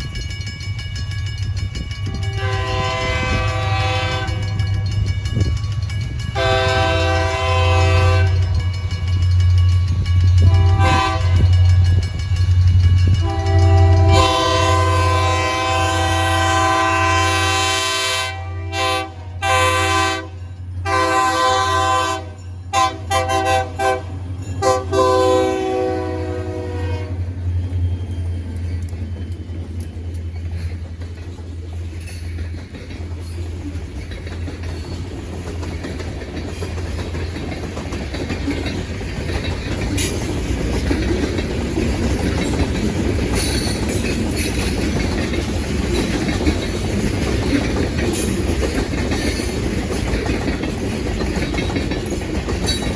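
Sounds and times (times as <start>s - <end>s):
locomotive multi-chime horn: 0.0s - 28.9s
locomotive engine drone: 0.0s - 52.9s
train rumbling and clacking past: 0.0s - 52.9s.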